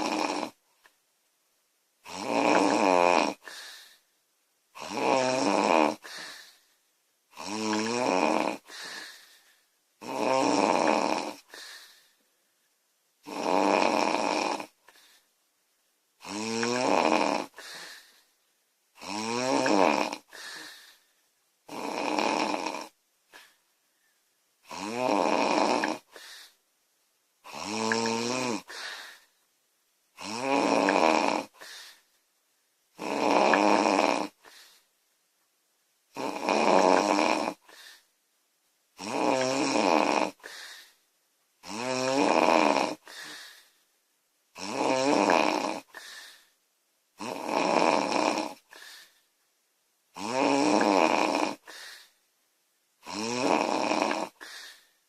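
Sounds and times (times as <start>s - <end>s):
girl snoring loudly: 0.0s - 0.6s, 2.0s - 3.9s, 4.8s - 6.5s, 7.3s - 9.2s, 10.0s - 11.8s, 13.2s - 14.8s, 16.2s - 18.1s, 19.0s - 20.9s, 21.7s - 23.0s, 24.6s - 26.5s, 27.4s - 29.2s, 30.2s - 31.8s, 33.0s - 34.6s, 36.1s - 38.0s, 39.0s - 40.7s, 41.6s - 43.4s, 44.6s - 46.1s, 47.2s - 48.9s, 50.1s - 52.0s, 53.0s - 54.7s
soft breath: 3.4s - 4.2s, 6.0s - 6.9s, 8.6s - 9.8s, 11.4s - 12.7s, 14.8s - 15.4s, 17.5s - 18.5s, 20.2s - 21.3s, 26.0s - 26.6s, 28.6s - 29.4s, 31.5s - 32.2s, 34.3s - 35.0s, 37.6s - 38.2s, 40.4s - 41.1s, 43.0s - 43.9s, 45.8s - 46.6s, 48.6s - 49.3s, 51.6s - 52.2s, 54.3s - 55.0s.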